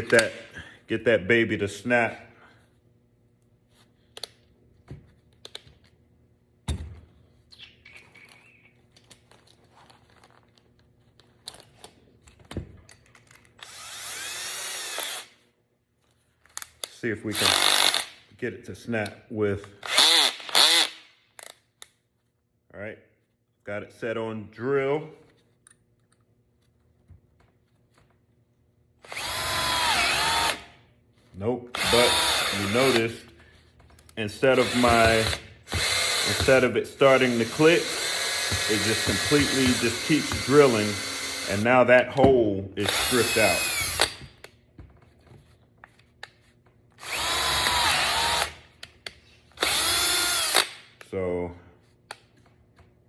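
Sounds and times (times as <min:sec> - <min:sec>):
cordless drill driving screw: 0:13.6 - 0:15.3, 0:17.4 - 0:18.1, 0:19.8 - 0:21.5, 0:29.0 - 0:30.6, 0:31.8 - 0:33.1, 0:34.5 - 0:41.5, 0:42.8 - 0:44.2, 0:47.0 - 0:48.6, 0:49.6 - 0:50.8.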